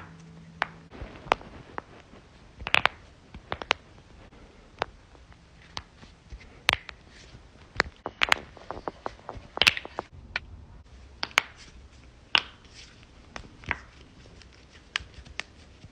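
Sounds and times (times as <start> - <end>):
knuckles cracking: 0.0 - 4.0, 4.7 - 10.5.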